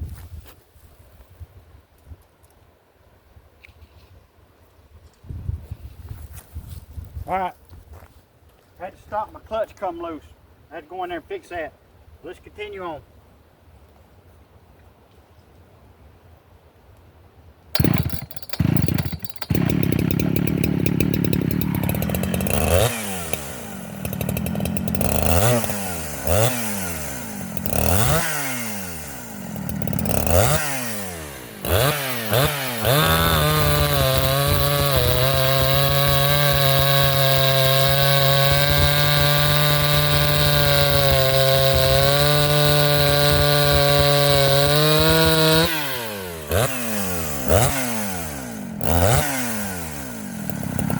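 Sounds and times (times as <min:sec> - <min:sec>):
two-stroke chainsaw revving: 0:17.8 - 0:50.9.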